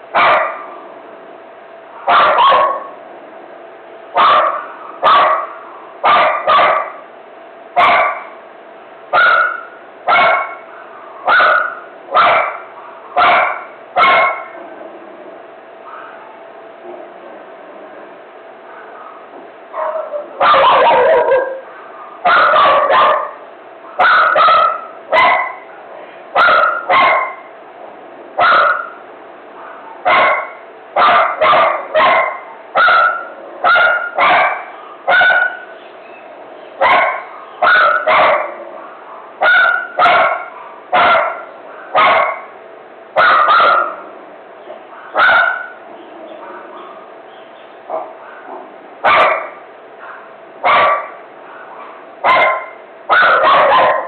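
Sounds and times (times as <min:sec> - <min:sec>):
dog barking: 0:00.2 - 0:00.7, 0:02.0 - 0:03.0, 0:04.2 - 0:07.0, 0:07.8 - 0:08.4, 0:09.1 - 0:14.6, 0:15.8 - 0:17.1, 0:18.6 - 0:25.8, 0:26.4 - 0:27.5, 0:28.4 - 0:29.0, 0:29.6 - 0:35.7, 0:36.8 - 0:42.6, 0:43.2 - 0:44.1, 0:44.8 - 0:47.2, 0:47.9 - 0:54.0.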